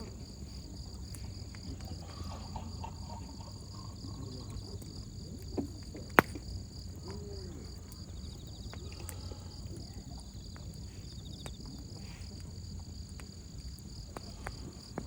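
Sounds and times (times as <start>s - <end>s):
insects chirring: 0.0s - 15.0s
wood fire pop: 4.6s - 7.3s.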